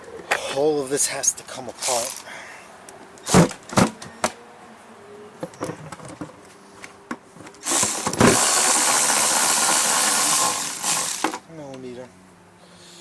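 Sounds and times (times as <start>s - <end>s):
power tool spinning: 7.6s - 11.4s.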